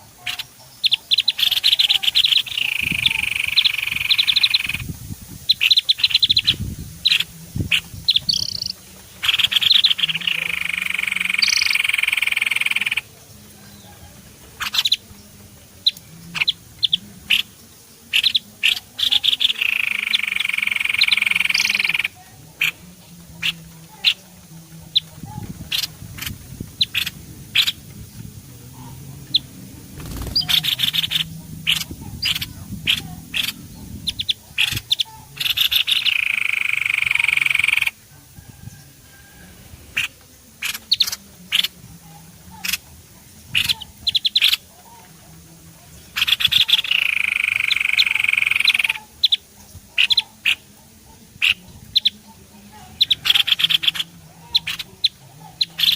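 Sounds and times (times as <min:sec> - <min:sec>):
rapid bird chirps: 0:00.0 - 0:13.8, 0:14.6 - 0:15.1, 0:15.8 - 0:22.8, 0:24.9 - 0:27.9, 0:28.8 - 0:38.0, 0:46.0 - 0:50.7, 0:53.0 - 0:55.9
harsh buzzing bird call: 0:05.5 - 0:13.1, 0:16.4 - 0:22.8.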